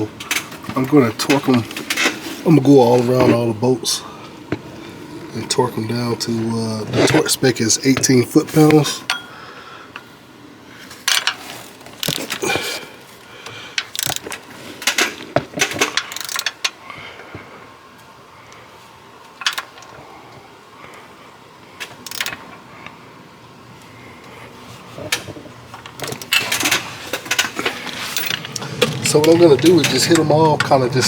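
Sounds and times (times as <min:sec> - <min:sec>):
ratchet wrench clicking: 0:13.8 - 0:14.3, 0:16.0 - 0:16.6, 0:22.0 - 0:22.4
metal clinking: 0:26.1 - 0:30.8.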